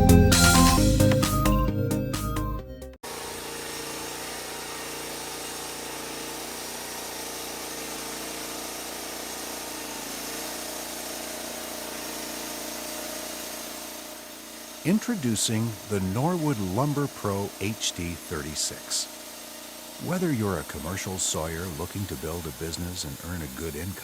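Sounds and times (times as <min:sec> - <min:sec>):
music: 0:00.0 - 0:03.0
band sawmill engine droning: 0:00.0 - 0:24.0.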